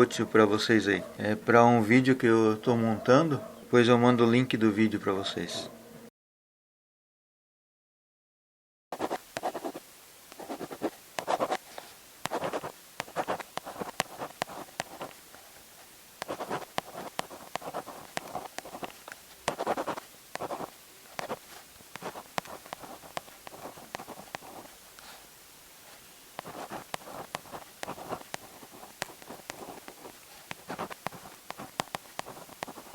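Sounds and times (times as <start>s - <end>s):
pen scratching on paper: 9.0s - 15.6s, 16.2s - 32.9s.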